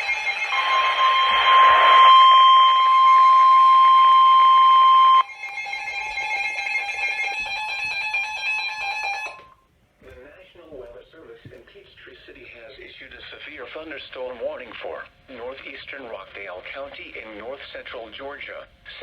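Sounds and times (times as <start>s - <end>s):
radio static: 0.0s - 5.2s
loud attention tone: 0.0s - 5.3s
pulsing electronic alarm: 0.0s - 5.4s.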